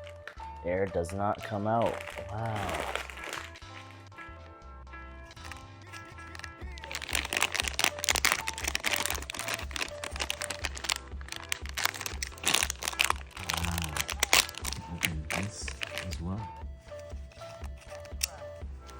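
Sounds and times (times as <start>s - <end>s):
background music with steady beat: 0.0s - 18.9s
chip bag crinkling: 1.7s - 4.1s, 5.3s - 16.2s.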